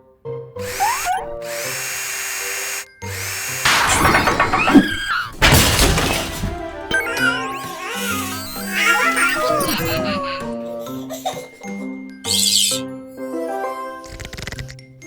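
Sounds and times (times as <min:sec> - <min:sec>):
clattering tool noises: 0:00.6 - 0:10.6
power tool whirring: 0:00.6 - 0:10.6
cartoon background music: 0:03.1 - 0:15.0.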